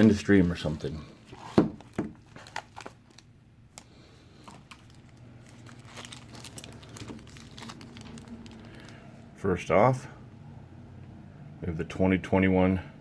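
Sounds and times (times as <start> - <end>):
packaging crinkling: 0.0 - 9.1.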